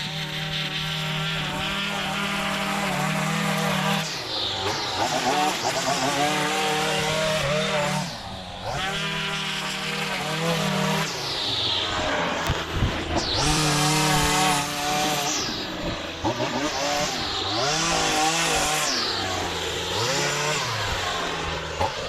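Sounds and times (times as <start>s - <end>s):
small gas engine running: 0.0s - 22.0s.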